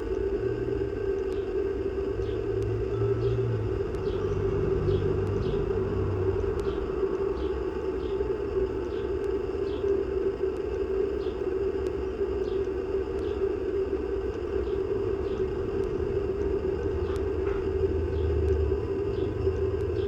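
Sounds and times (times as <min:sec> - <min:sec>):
constant hum: 0:00.0 - 0:20.0
car driving by: 0:15.2 - 0:20.0.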